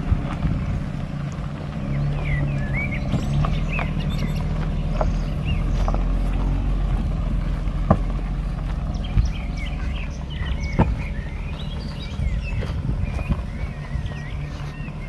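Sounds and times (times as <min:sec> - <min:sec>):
car knocking over rough ground: 0:00.0 - 0:15.0
small car engine running: 0:00.0 - 0:15.0.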